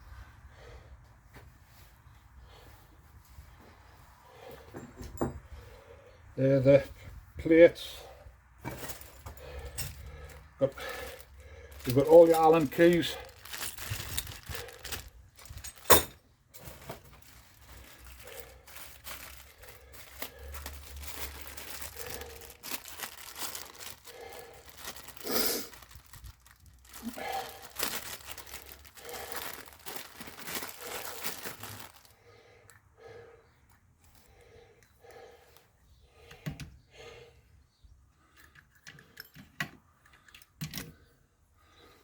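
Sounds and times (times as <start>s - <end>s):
packaging crinkling: 10.8s - 16.1s, 16.7s - 32.2s.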